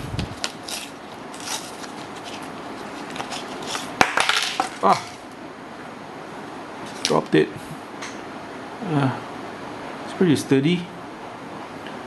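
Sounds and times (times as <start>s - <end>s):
plastic packaging crackling: 0.3s - 5.4s.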